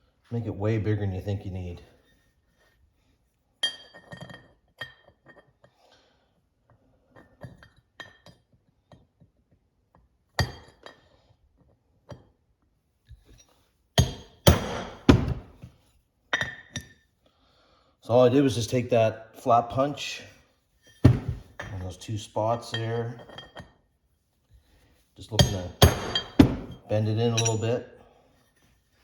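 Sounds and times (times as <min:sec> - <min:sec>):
steel tools clinking on workbench: 0:25.4 - 0:27.8.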